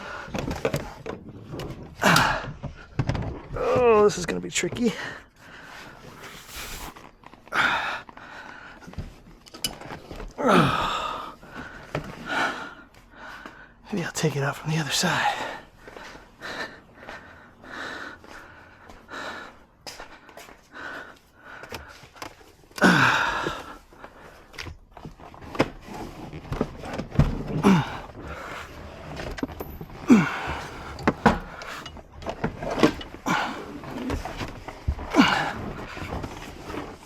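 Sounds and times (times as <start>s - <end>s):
person breathing: 0.0s - 0.6s, 4.9s - 9.0s, 10.4s - 13.8s, 15.2s - 22.2s, 30.1s - 32.0s.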